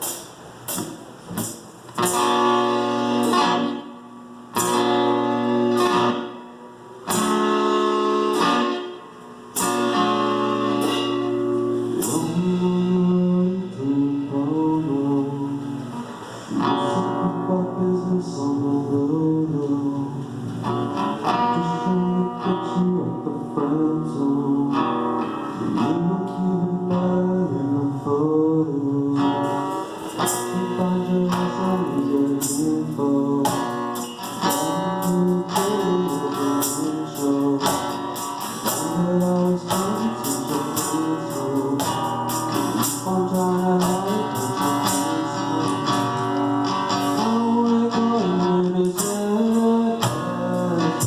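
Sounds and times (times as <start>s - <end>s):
acoustic guitar strumming: 0.0s - 51.0s
person singing: 11.9s - 51.0s.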